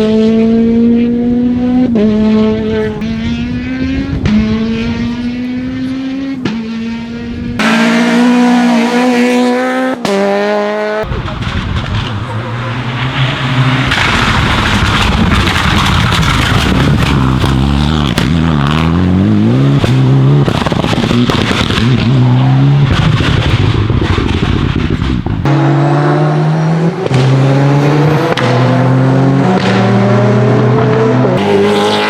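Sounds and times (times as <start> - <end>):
car engine revving: 0.0 - 32.0
exhaust pops and crackles: 11.0 - 25.5.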